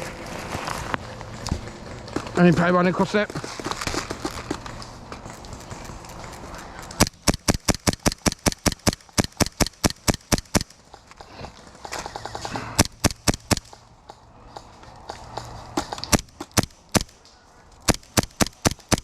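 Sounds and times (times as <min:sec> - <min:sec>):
airsoft gun firing: 0:07.0 - 0:10.9, 0:12.1 - 0:13.8, 0:15.8 - 0:17.2, 0:17.8 - 0:19.0.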